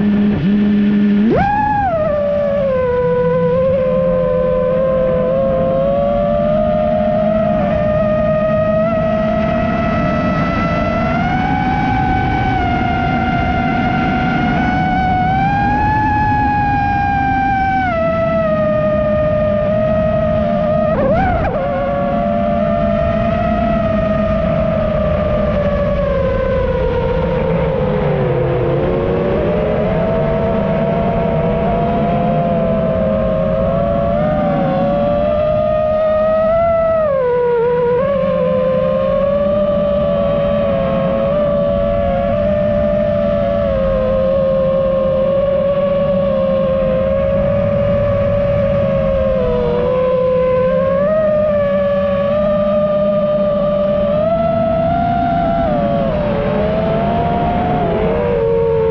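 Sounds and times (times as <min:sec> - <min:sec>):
drone propellers whining: 0:00.0 - 0:58.9
quadcopter motors whining: 0:01.2 - 0:26.0.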